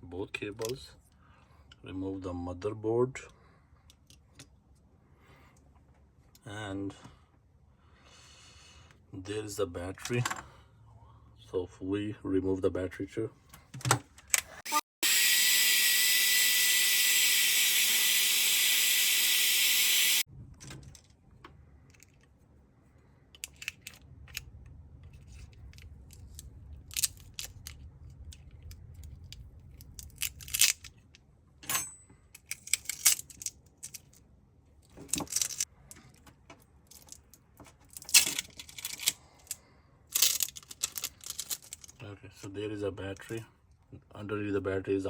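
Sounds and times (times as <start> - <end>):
whirring hiss with whine: 14.7 - 20.3.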